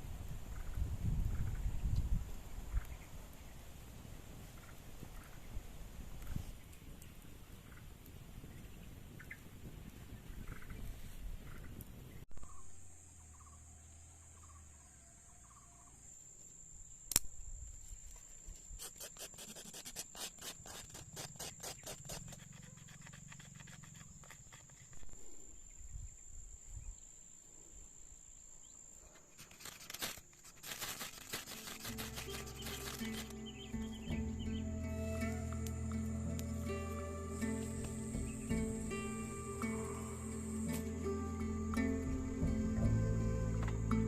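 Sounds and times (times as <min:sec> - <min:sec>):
insects trilling: 0:12.4 - 0:44.0
sharp click: 0:17.1 - 0:17.3.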